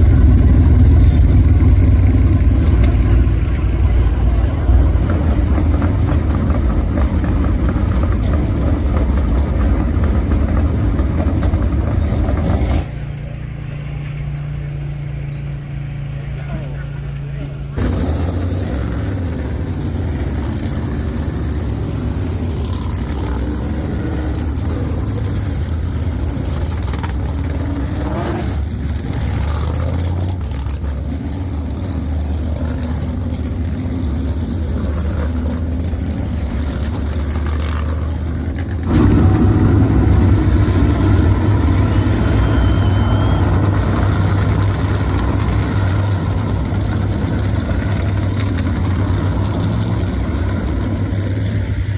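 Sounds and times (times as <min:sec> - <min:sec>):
race car engines droning: 0:00.0 - 0:51.9
engine revving: 0:17.7 - 0:51.9.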